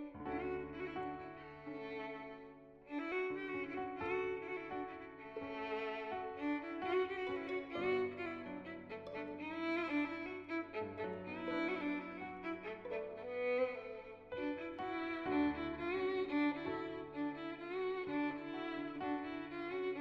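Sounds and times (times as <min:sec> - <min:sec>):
violin melody: 0:00.0 - 0:20.0
sustained low strings: 0:05.6 - 0:17.0.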